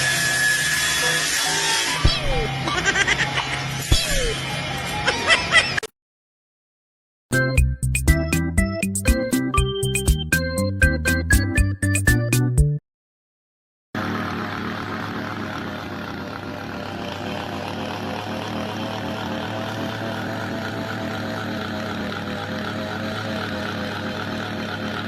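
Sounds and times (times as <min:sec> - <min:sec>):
steady engine drone: 0:00.0 - 0:05.6, 0:14.0 - 0:25.0.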